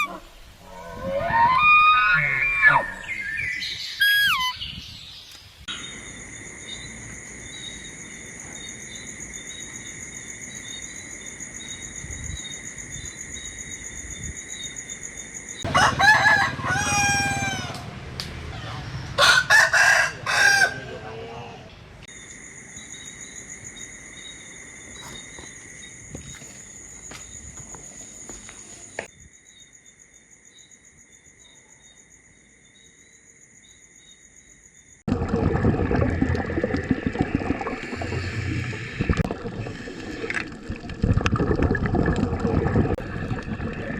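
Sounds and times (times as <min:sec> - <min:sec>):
crickets chirring: 0:00.0 - 0:16.4, 0:22.1 - 0:35.1
rooster crowing: 0:15.7 - 0:17.9, 0:18.6 - 0:21.0.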